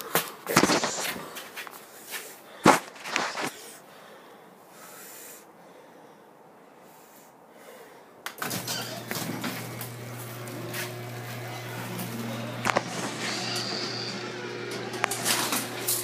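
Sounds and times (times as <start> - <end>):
garage door opener motor humming: 8.4 - 16.0.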